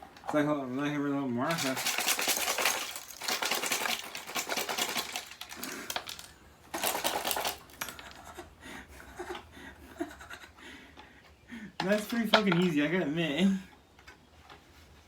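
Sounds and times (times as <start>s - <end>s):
plastic parts clicking and rattling: 1.4s - 8.2s, 11.8s - 12.8s.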